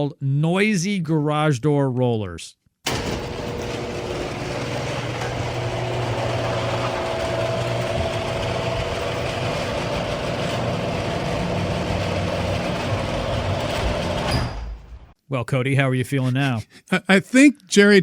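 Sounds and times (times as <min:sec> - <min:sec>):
garage door rattling and screeching: 0:02.9 - 0:15.1.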